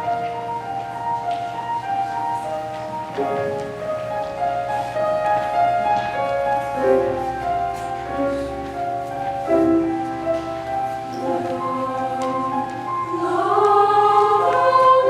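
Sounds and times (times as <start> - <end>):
slow instrumental chords and melody: 0.0 - 15.0.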